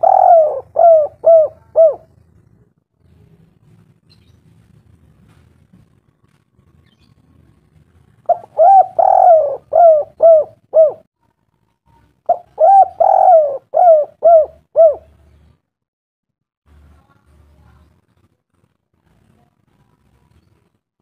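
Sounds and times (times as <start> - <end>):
bird cooing: 0.0 - 2.2, 8.3 - 11.1, 12.3 - 15.2.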